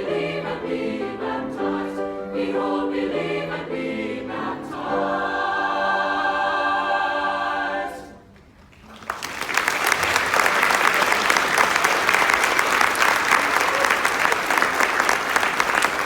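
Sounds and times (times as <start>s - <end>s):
choir singing: 0.0s - 8.3s
audience applause: 8.7s - 16.0s.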